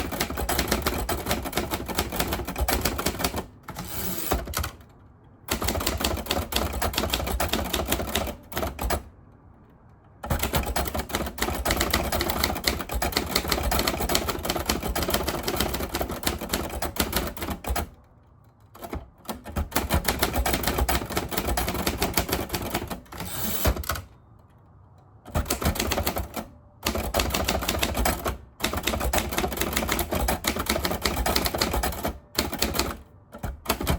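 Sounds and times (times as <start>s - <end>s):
manual typewriter keystrokes: 0.0s - 33.9s.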